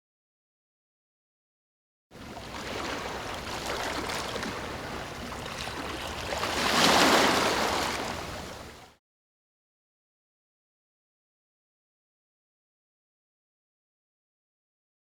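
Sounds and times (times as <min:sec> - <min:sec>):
rushing water: 0:02.2 - 0:09.0.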